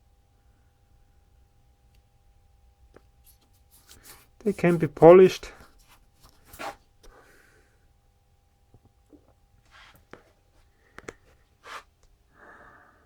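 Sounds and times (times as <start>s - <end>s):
short rustles: 3.3s - 6.8s.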